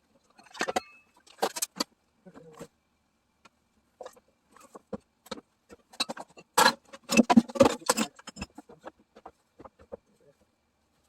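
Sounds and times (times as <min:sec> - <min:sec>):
metal tools clinking and knocking: 0:00.3 - 0:01.8, 0:05.9 - 0:08.9.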